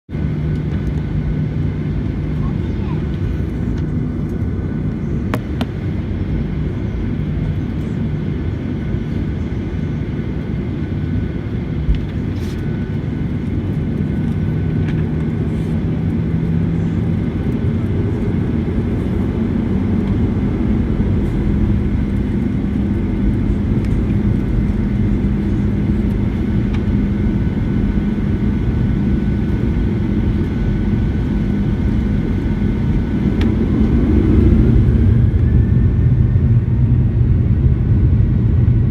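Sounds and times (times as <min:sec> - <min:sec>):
jet engine whine: 0:00.1 - 0:38.9
jet engines rumbling: 0:00.1 - 0:38.9.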